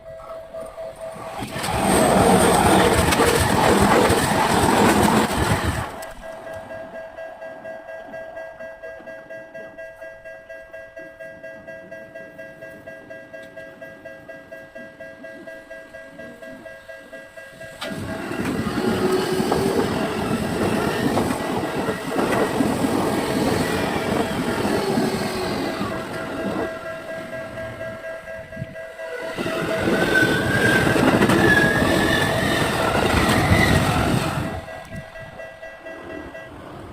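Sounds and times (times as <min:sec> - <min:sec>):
crossing warning bell ringing: 0:00.0 - 0:36.9
electric trains passing: 0:00.0 - 0:36.9.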